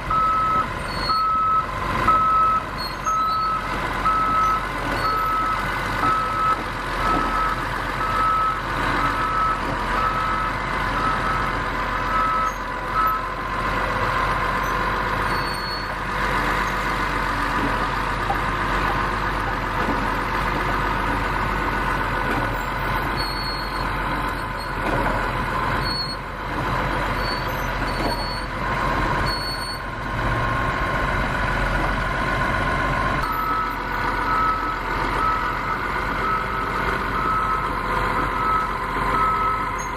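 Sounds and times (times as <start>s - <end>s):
bulldozer diesel engine running: 0.0s - 39.9s
reversing alarm beeping: 0.1s - 11.5s, 12.1s - 13.3s, 33.2s - 39.9s.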